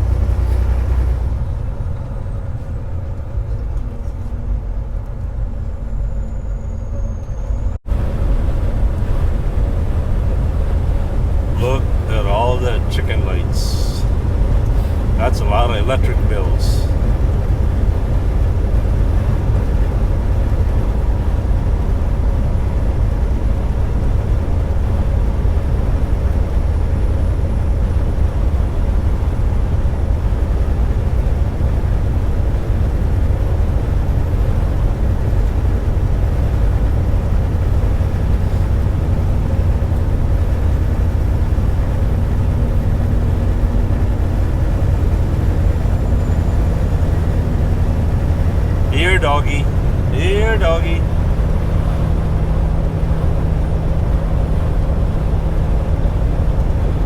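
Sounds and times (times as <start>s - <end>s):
truck engine and road noise: 0.0s - 57.0s.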